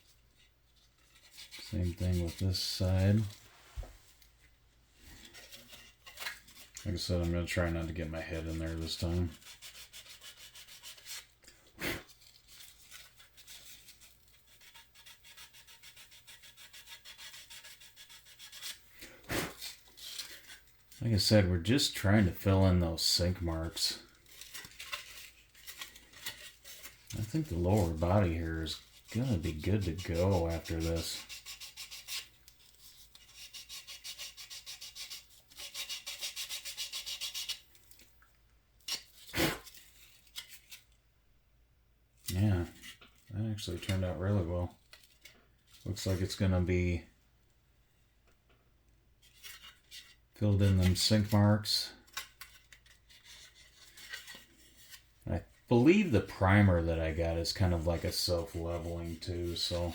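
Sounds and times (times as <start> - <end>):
hand sanding scraping strokes: 1.0 - 4.2, 5.1 - 37.6, 55.7 - 59.9.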